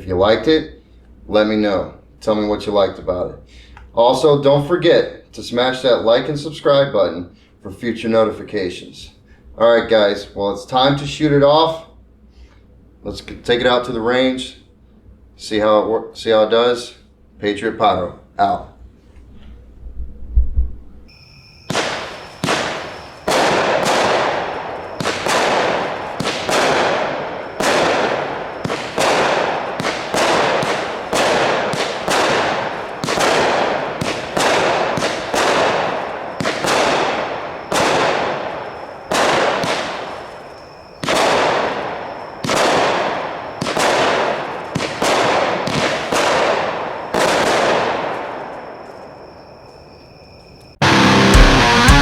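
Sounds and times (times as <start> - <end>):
firework cake shots banging: 21.7 - 40.4, 41.0 - 48.0.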